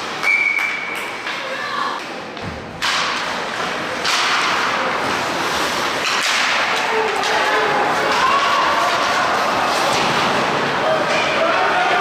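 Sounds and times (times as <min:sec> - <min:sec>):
crowd noise: 0:00.0 - 0:12.0.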